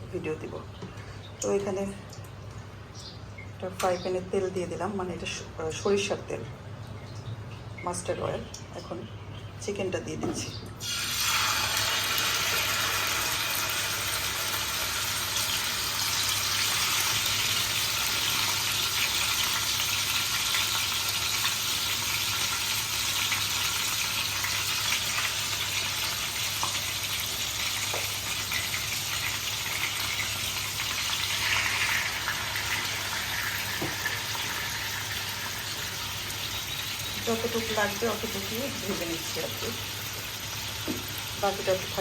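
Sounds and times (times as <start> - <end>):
chicken sizzling in frying pan: 10.8 - 42.0.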